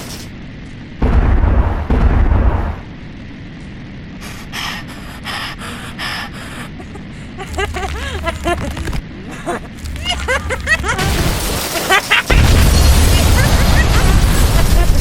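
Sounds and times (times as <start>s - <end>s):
low rumble: 0.8s - 5.3s
breathy gasps: 4.2s - 8.4s.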